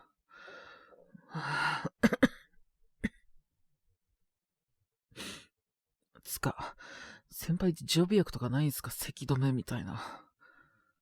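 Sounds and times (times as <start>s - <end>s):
breathing: 0.3s - 1.9s, 6.8s - 7.3s, 10.0s - 11.0s
man coughing: 2.0s - 3.2s.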